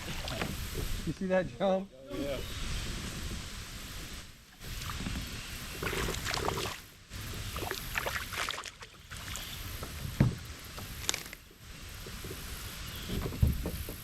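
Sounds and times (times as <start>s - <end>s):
water sloshing and splashing: 0.0s - 0.9s, 4.5s - 9.5s.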